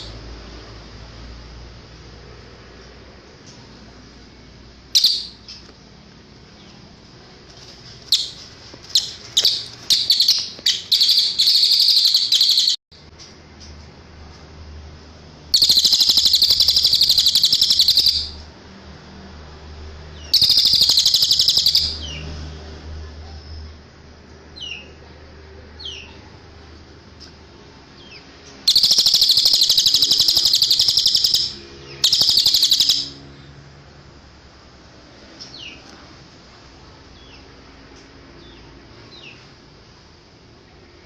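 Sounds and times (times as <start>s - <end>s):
songbird chirping and trilling: 4.9s - 5.9s, 8.1s - 13.8s, 15.5s - 18.4s, 20.1s - 22.3s, 24.5s - 25.0s, 25.8s - 26.3s, 27.2s - 33.5s.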